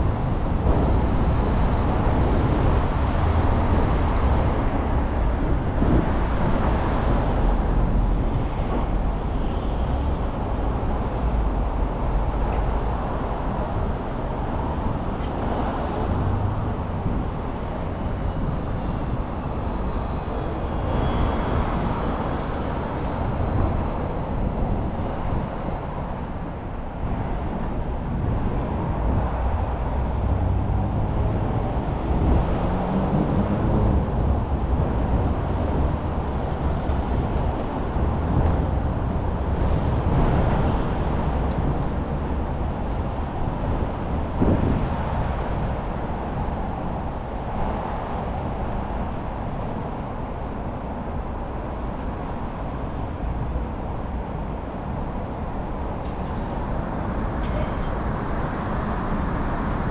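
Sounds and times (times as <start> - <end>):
motor vehicles passing: 29.6 - 46.2.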